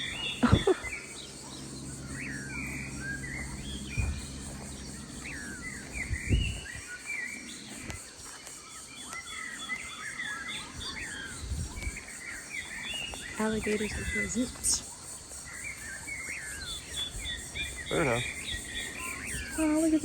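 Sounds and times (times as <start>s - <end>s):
low steady hum: 0.0s - 8.2s
faint insect drone: 0.0s - 20.0s
songbirds chirping: 0.0s - 20.0s.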